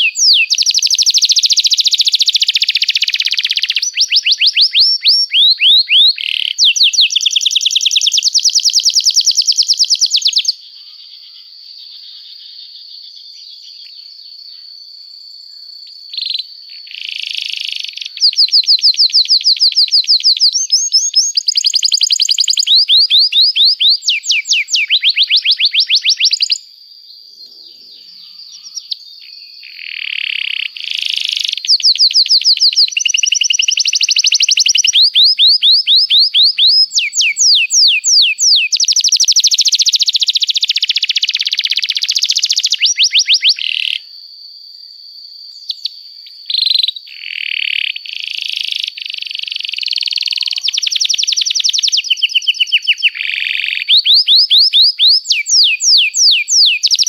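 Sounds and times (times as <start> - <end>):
canary singing: 0.0 - 10.6, 17.0 - 26.6, 27.4 - 44.0, 49.0 - 57.0.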